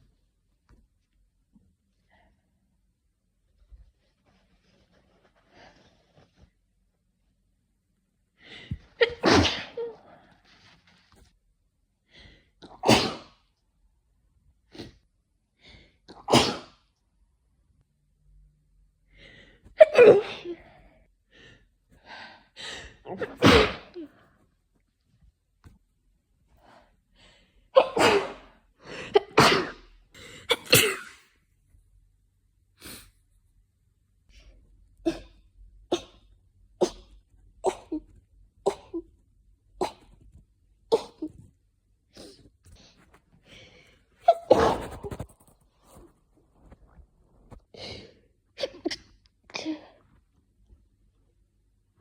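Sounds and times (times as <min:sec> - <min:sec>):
person sneezing: 0:09.0 - 0:10.0, 0:12.6 - 0:13.4, 0:16.1 - 0:16.7, 0:19.7 - 0:20.8, 0:23.0 - 0:24.2, 0:27.8 - 0:31.3, 0:39.8 - 0:40.2, 0:40.9 - 0:41.4, 0:44.2 - 0:46.0.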